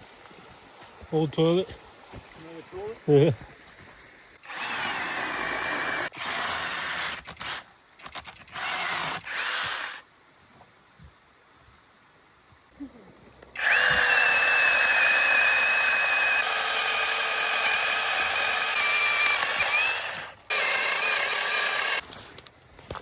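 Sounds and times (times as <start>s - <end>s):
small electric motor whining: 13.6s - 22.0s.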